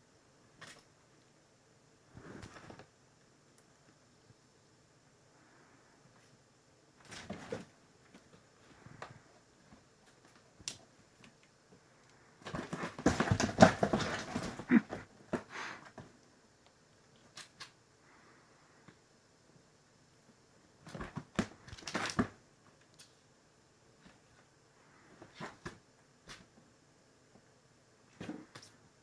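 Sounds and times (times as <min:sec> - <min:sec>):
kitten scuffling and rustling: 0:07.0 - 0:10.8, 0:12.4 - 0:16.1.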